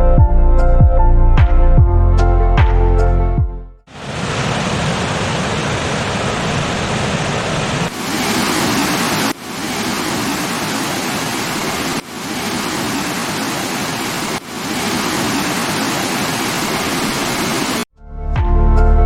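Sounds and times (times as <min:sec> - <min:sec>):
waterfall rushing: 0:03.9 - 0:17.9.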